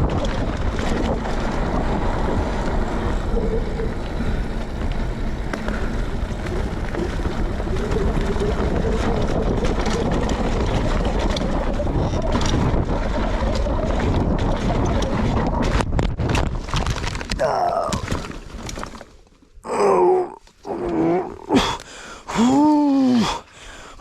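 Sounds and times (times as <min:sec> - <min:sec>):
bike knocks and rattles: 0:00.0 - 0:17.4
wind rushing over microphone: 0:00.0 - 0:18.0
tyre and trail rumble: 0:00.0 - 0:24.0
person crying out in pain: 0:17.4 - 0:18.0, 0:19.6 - 0:23.4.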